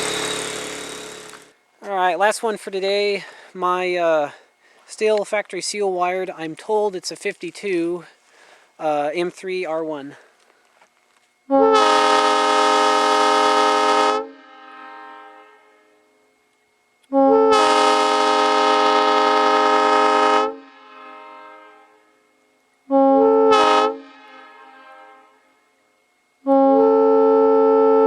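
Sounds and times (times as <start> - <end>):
air horn echo: 11.5 - 16.2, 17.1 - 25.8, 26.4 - 28.0
locomotive air horn blasts: 11.5 - 16.3, 17.0 - 28.0.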